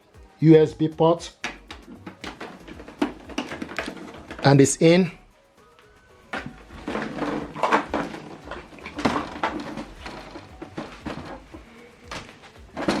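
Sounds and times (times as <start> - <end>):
usb cable rustling: 1.4 - 4.7, 6.3 - 13.0.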